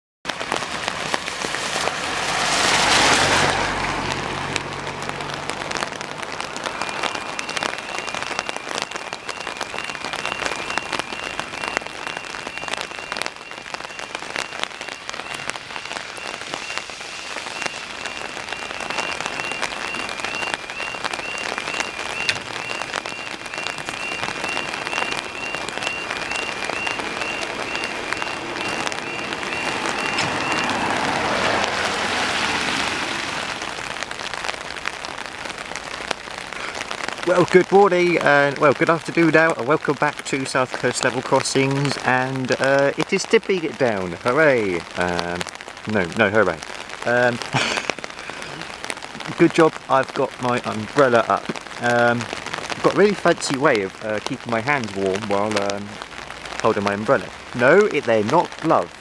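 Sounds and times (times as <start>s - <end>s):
rain pattering on umbrella: 0.3s - 59.0s
vehicle swishing past on wet road: 0.4s - 7.8s, 25.9s - 34.6s.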